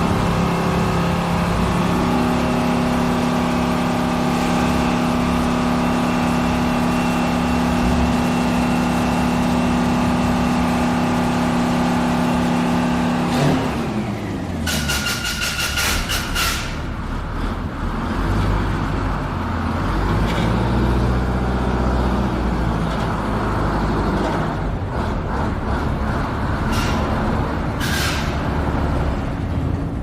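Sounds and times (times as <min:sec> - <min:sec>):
bus engine rumbling: 0:00.0 - 0:30.0
air brakes hissing: 0:14.7 - 0:16.9, 0:26.6 - 0:27.2, 0:27.8 - 0:28.5.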